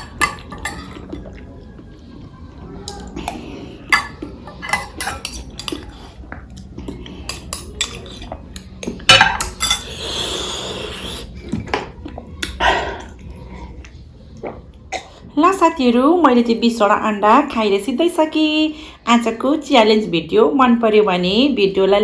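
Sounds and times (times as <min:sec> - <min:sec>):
dishes and cutlery clinking: 0:00.0 - 0:01.4, 0:02.9 - 0:10.0.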